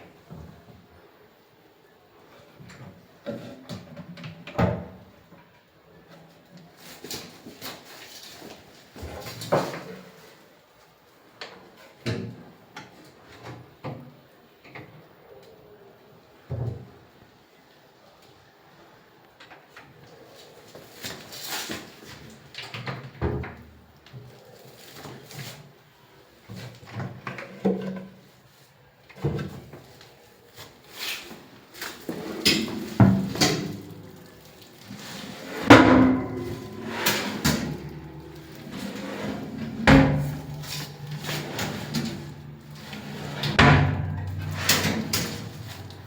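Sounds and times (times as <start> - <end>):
cabinet drawers and doors knocking: 32.5 - 34.1, 35.7 - 46.0
louder thuds: 35.6 - 46.0.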